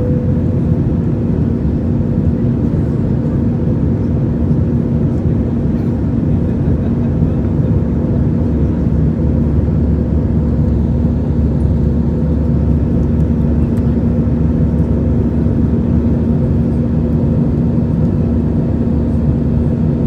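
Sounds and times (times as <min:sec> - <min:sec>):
airplane cabin engine drone: 0:00.0 - 0:20.0
constant low hum: 0:00.0 - 0:20.0.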